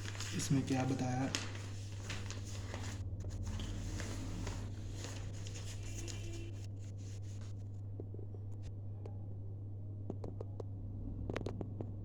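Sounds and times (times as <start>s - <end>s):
paper rustling and pen clicks: 0.0s - 7.5s.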